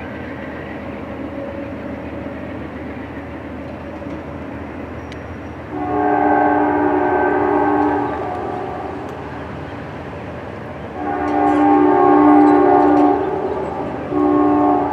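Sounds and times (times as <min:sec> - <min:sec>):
diesel train rumbling: 0:00.0 - 0:14.9
locomotive air horn: 0:05.6 - 0:09.0, 0:10.9 - 0:14.9.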